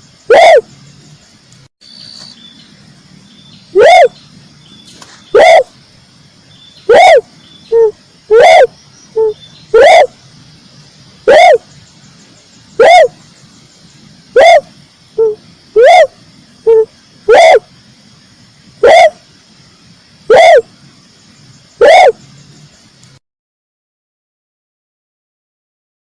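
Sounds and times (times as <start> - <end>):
dove cooing: 0.3 - 0.7, 3.8 - 4.2, 5.3 - 5.7, 6.9 - 10.2, 11.2 - 11.7, 12.7 - 13.2, 14.3 - 17.7, 18.8 - 19.3, 20.3 - 20.7, 21.8 - 22.2.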